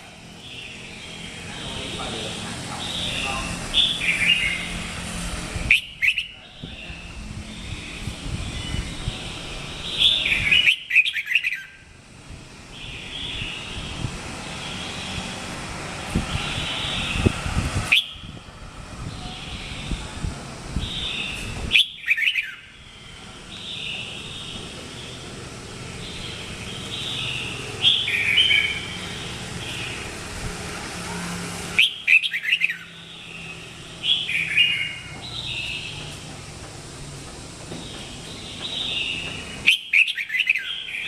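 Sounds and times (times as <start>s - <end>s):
bird warbling song: 5.6s - 11.8s, 12.7s - 15.3s, 20.8s - 30.3s, 31.8s - 36.2s, 37.8s - 41.0s.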